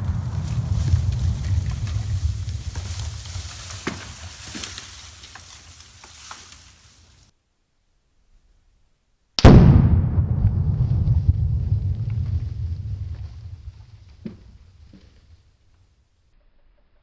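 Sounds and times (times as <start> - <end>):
explosion: 0.0 - 4.2, 9.4 - 14.8
low rumble: 0.0 - 6.2, 9.4 - 15.0
scattered cracks: 0.0 - 7.3, 9.4 - 15.2.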